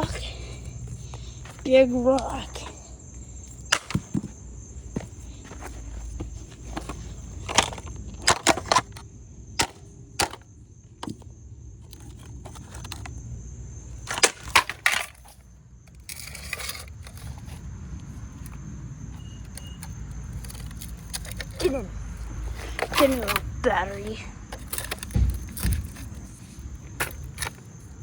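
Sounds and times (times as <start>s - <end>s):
scraping rattle: 14.0s - 28.0s
rock knocking on plastic housing: 22.6s - 27.7s.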